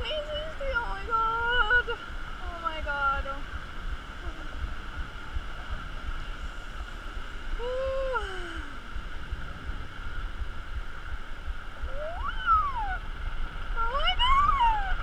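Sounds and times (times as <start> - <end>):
roller coaster rumble: 0.0 - 15.0
riders whooping: 7.5 - 9.1, 11.8 - 15.0.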